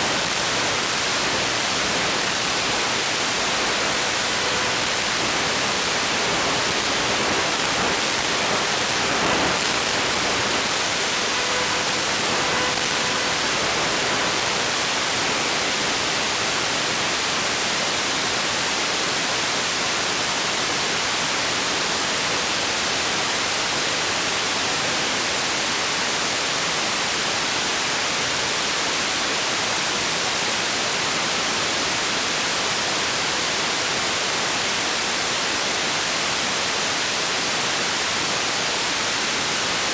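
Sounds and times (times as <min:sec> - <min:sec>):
radio static hiss: 0:00.0 - 0:27.2.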